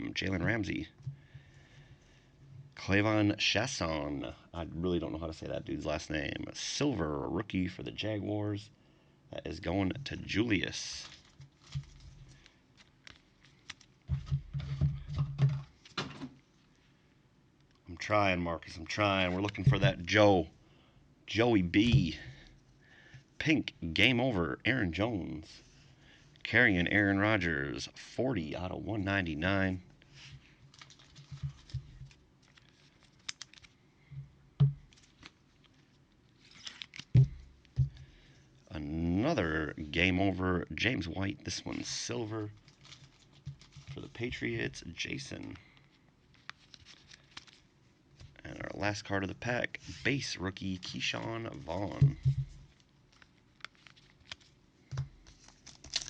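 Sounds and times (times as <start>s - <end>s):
trading cards flipped by hand: 11.0s - 14.4s, 30.7s - 33.8s, 36.4s - 37.2s, 46.3s - 47.6s, 50.9s - 56.0s
trading cards clicking and tapping: 19.4s - 20.1s.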